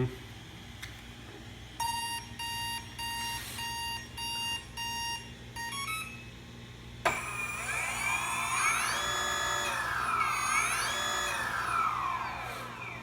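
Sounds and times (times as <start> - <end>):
motor whine rising in pitch: 7.1 - 13.0
rising three-step tone: 7.1 - 13.0.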